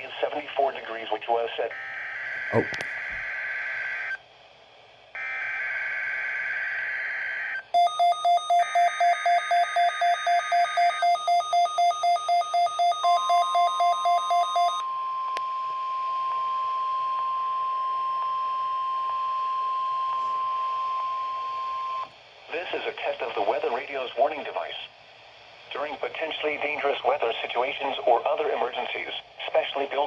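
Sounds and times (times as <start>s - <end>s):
steady single-pitch alarm tone: 1.7s - 4.2s, 5.2s - 22.1s
receiver alert beeps: 2.4s - 3.4s, 7.8s - 14.8s.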